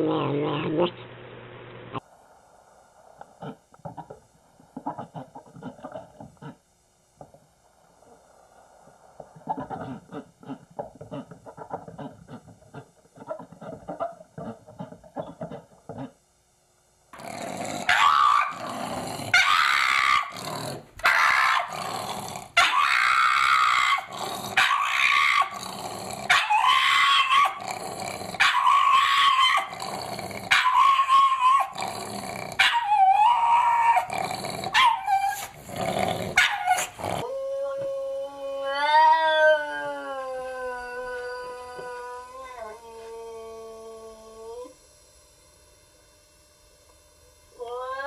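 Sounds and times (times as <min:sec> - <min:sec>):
dog howling and yipping: 0:17.8 - 0:18.7, 0:19.3 - 0:20.4, 0:21.0 - 0:21.8, 0:22.6 - 0:25.6, 0:26.3 - 0:27.7, 0:28.4 - 0:29.8, 0:30.5 - 0:31.9, 0:32.6 - 0:35.6, 0:36.4 - 0:44.7.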